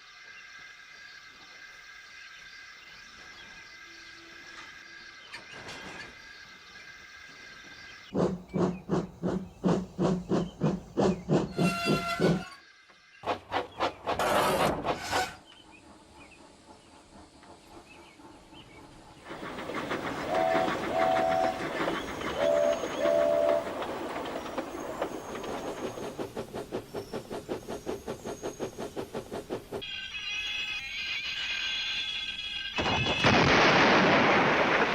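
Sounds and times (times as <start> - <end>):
steam locomotive chuffing: 8.1 - 12.6, 13.2 - 32.7
steam whistle toots: 11.6 - 12.6, 22.4 - 23.7.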